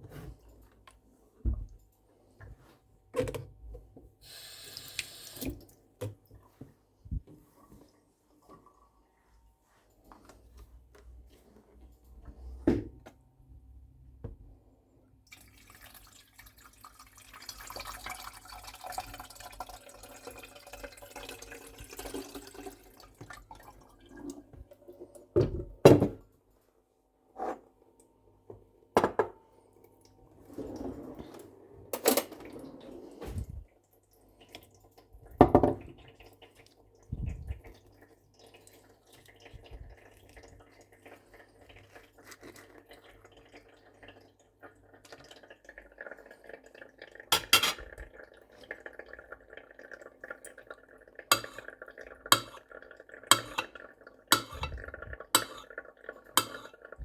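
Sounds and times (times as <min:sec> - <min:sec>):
pans and utensils clinking: 0:47.4 - 0:48.0, 0:51.3 - 0:52.6, 0:53.3 - 0:55.8, 0:56.4 - 0:56.8.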